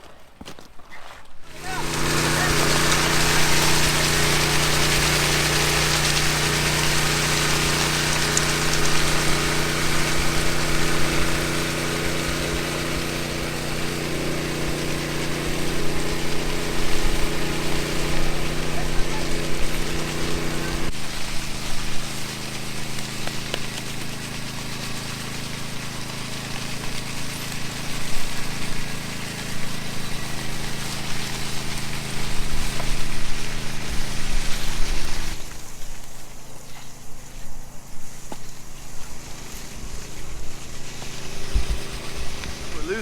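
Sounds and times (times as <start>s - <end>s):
engine idling: 1.5s - 35.4s, 39.2s - 43.0s
steady rushing hiss: 1.5s - 43.0s.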